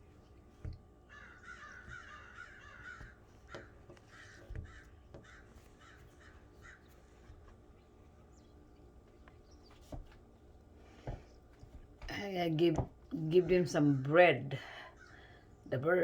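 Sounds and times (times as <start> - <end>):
crows cawing: 1.1 - 7.0.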